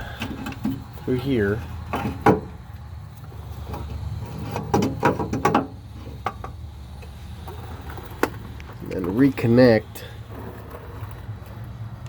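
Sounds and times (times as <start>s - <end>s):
knocks and clunks of metal part: 1.9s - 2.6s, 4.5s - 6.6s.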